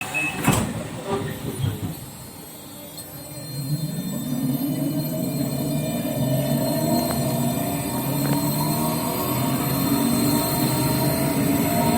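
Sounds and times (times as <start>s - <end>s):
electric train motor hum: 3.3s - 11.9s.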